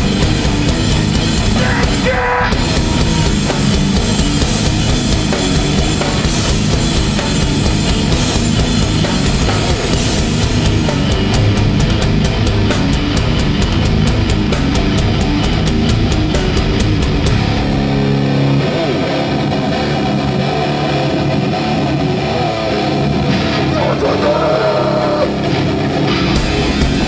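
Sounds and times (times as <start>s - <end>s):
drums and cymbal hits: 0.0s - 18.5s, 25.3s - 27.0s
bass guitar: 0.0s - 27.0s
distorted electric guitars: 0.0s - 27.0s.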